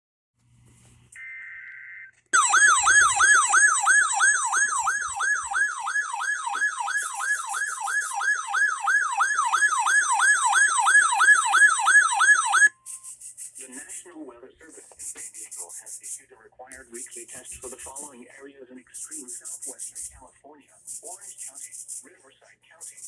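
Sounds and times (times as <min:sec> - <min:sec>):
electronic siren alert tone: 0:01.2 - 0:13.1.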